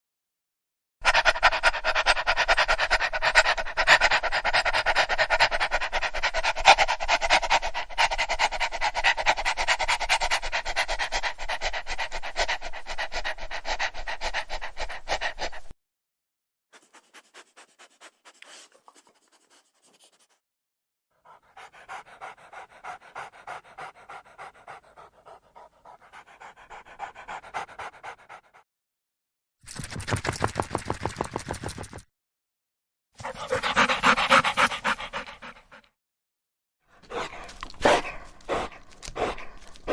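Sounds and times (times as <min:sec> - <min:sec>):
dog panting: 0:01.0 - 0:15.7, 0:21.2 - 0:28.6, 0:33.2 - 0:35.9, 0:36.9 - 0:39.9.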